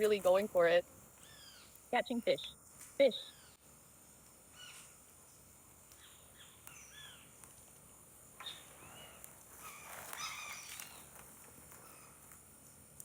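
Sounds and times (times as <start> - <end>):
high insect drone: 0.0 - 13.0
chirping animal calls: 1.2 - 1.8, 8.4 - 12.4.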